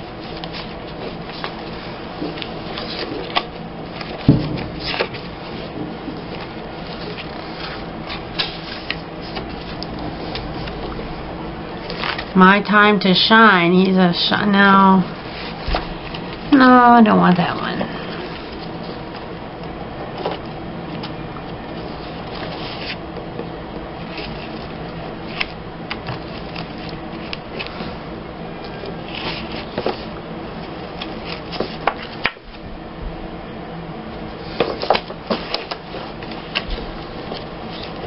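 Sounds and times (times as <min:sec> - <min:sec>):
steady background hum: 0:00.0 - 0:38.0
paper cards rustling: 0:00.2 - 0:04.2, 0:04.8 - 0:11.0, 0:11.8 - 0:12.3, 0:21.8 - 0:23.0, 0:24.0 - 0:28.0, 0:28.8 - 0:30.1, 0:30.7 - 0:32.3, 0:34.4 - 0:38.0.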